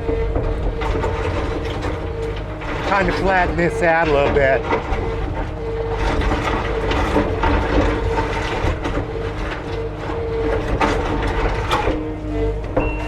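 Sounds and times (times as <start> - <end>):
diesel engine under load: 0.0 - 13.0
grapple knocking and scraping: 0.0 - 13.0
hydraulics whining: 0.0 - 13.0.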